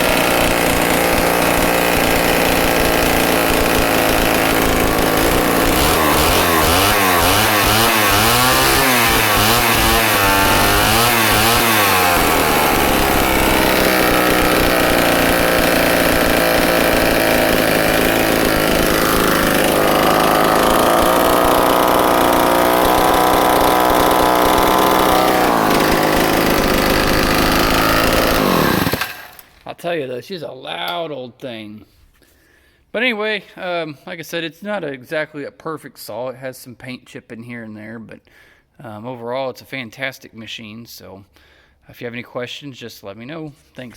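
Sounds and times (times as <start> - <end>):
chainsaw engine revving: 0.0 - 29.6.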